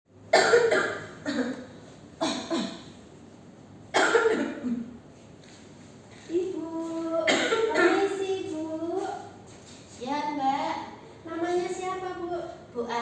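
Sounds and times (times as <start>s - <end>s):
woman coughing: 0.3s - 2.9s, 3.9s - 4.9s, 7.3s - 8.2s.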